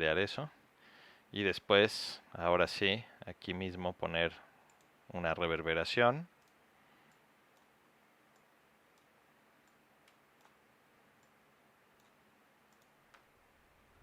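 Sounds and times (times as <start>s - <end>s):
computer mouse clicks: 4.7s - 5.0s, 6.4s - 7.7s, 8.3s - 10.6s, 11.2s - 13.3s.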